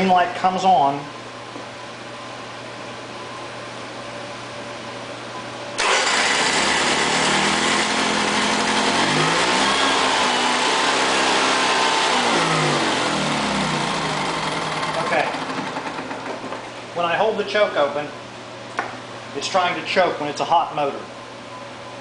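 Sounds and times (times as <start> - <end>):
generator engine running: 5.8 - 18.0.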